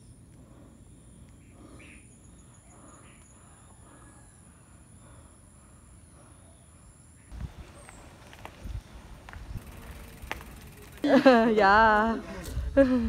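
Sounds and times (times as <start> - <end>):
faint bird chirps: 0.0 - 5.4.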